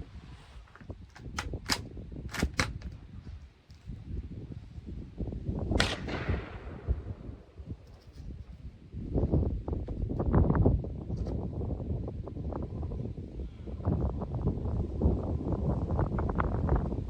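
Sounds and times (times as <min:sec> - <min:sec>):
wind rumbling on microphone: 0:00.0 - 0:17.0
rifle shot with echo: 0:05.7 - 0:07.6.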